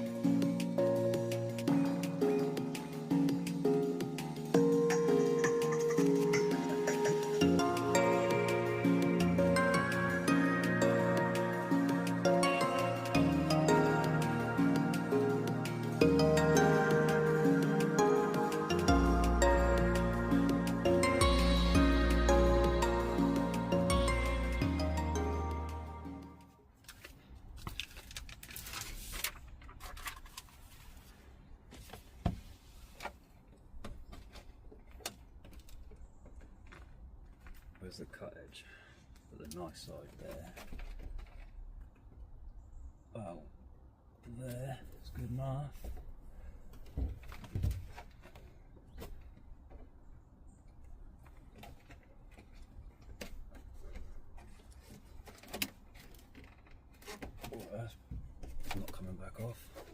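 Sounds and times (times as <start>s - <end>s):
mat rustling and crinkling: 26.8s - 37.9s.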